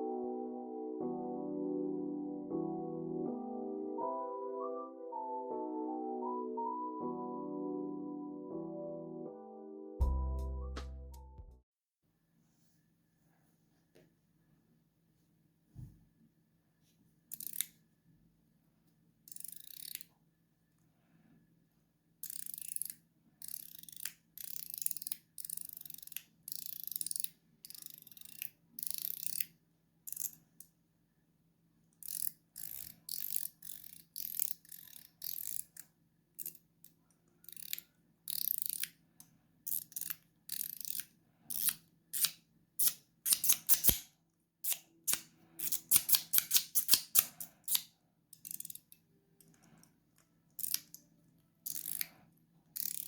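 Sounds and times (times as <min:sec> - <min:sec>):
fidget slider clicking and rattling: 0:17.3 - 0:17.8, 0:19.3 - 0:20.1, 0:22.2 - 0:30.7, 0:32.0 - 0:39.0, 0:39.7 - 0:44.0, 0:44.6 - 0:49.9, 0:50.6 - 0:51.0, 0:51.6 - 0:53.0.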